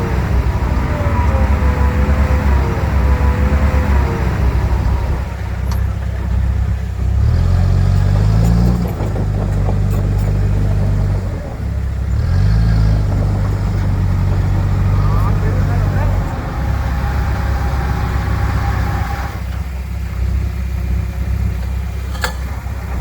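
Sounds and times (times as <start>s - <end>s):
diesel engine revving: 0.0s - 23.0s.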